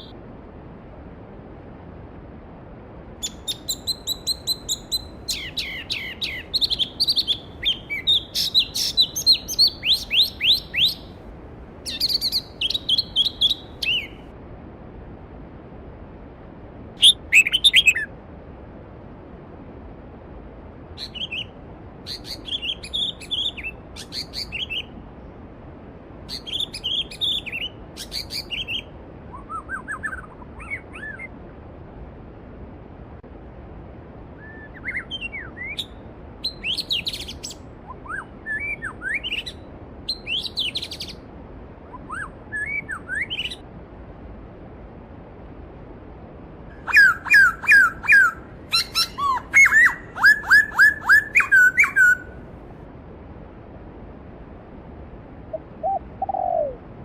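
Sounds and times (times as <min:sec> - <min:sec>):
songbirds chirping and trilling: 0:03.2 - 0:11.2, 0:11.8 - 0:14.2, 0:46.8 - 0:52.4.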